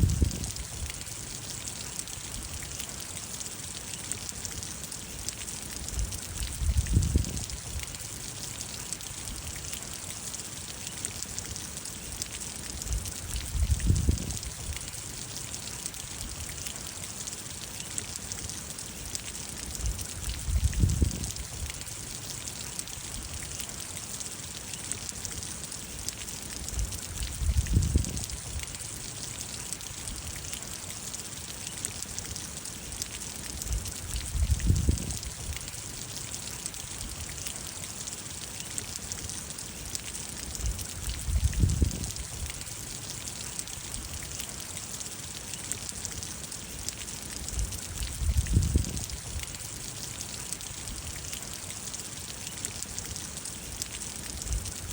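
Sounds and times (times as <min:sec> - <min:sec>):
rain falling: 0:00.0 - 0:54.9.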